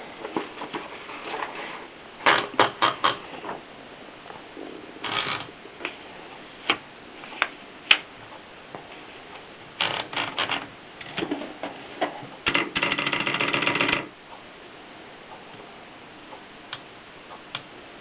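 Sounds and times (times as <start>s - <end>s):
typewriter keys striking: 12.5s - 14.1s.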